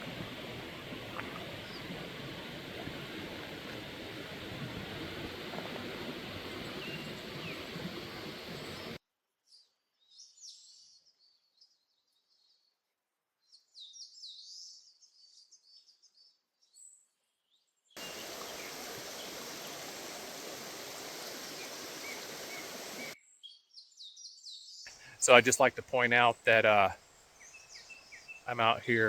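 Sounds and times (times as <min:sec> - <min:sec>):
small birds chirping: 0:00.0 - 0:09.0, 0:18.0 - 0:23.2, 0:24.4 - 0:29.0.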